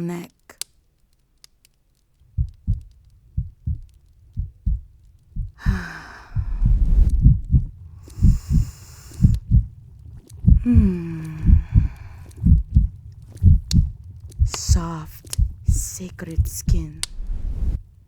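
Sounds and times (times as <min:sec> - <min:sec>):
heartbeat: 0:02.2 - 0:18.0
long breaths: 0:04.2 - 0:17.8.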